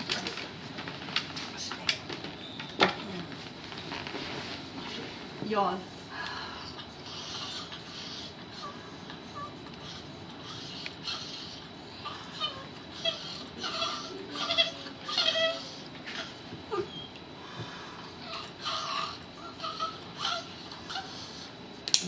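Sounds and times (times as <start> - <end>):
dog whining squeakily: 6.5 - 17.2, 18.2 - 21.6.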